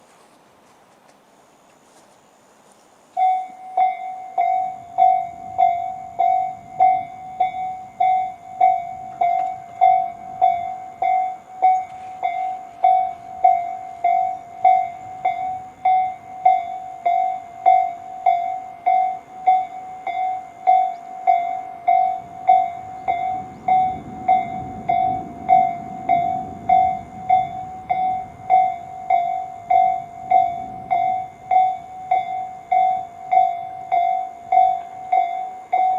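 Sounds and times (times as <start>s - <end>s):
train rumbling: 0.0s - 35.9s
level crossing alarm dinging: 3.2s - 35.9s.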